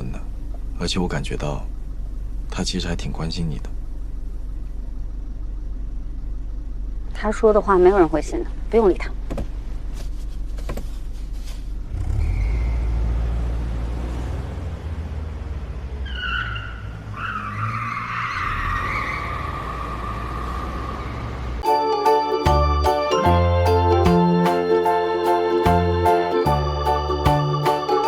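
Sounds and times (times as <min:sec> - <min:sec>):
car engine rumble: 0:00.0 - 0:28.0
tyre squeal: 0:11.5 - 0:13.0, 0:16.1 - 0:21.2.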